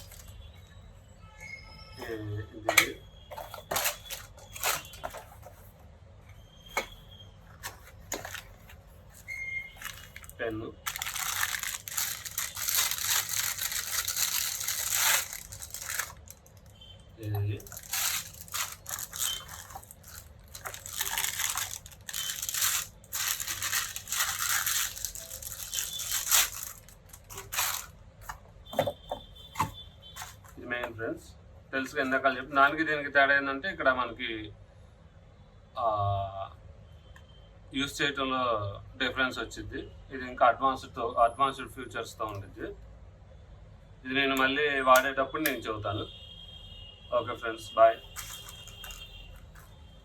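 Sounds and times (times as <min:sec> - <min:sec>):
packaging rustling: 0:00.0 - 0:00.3, 0:02.7 - 0:05.8, 0:06.8 - 0:16.7, 0:17.6 - 0:30.6, 0:48.0 - 0:49.8.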